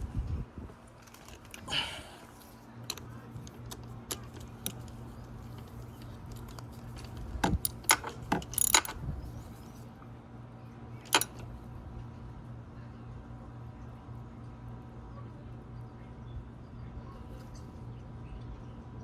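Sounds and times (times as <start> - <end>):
metal tools clinking: 0.8 - 9.8, 11.1 - 11.5.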